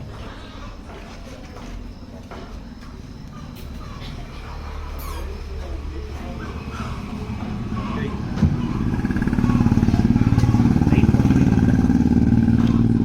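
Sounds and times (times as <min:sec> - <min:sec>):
motorcycle engine running: 0:05.8 - 0:13.0.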